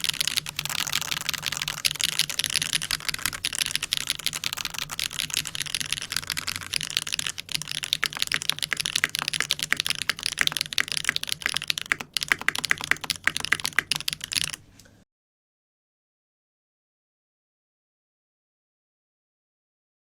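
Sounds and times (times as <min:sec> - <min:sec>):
mechanical keyboard typing: 0:00.0 - 0:14.7.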